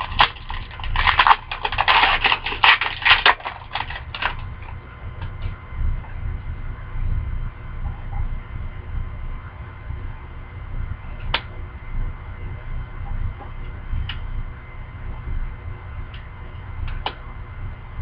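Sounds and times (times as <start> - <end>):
foil wrapper crumpling and tearing: 0.0 - 4.5.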